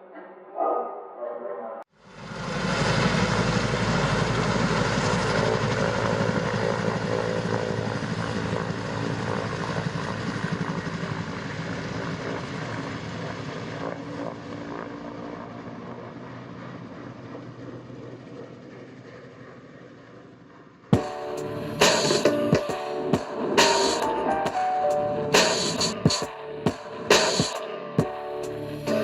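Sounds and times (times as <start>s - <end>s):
loud mechanical drone: 2.0s - 9.4s.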